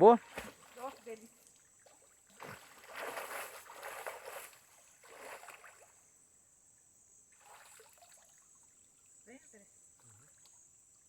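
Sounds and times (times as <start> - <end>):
water splashing: 0.0 - 5.9
faint stream flow: 0.0 - 11.0.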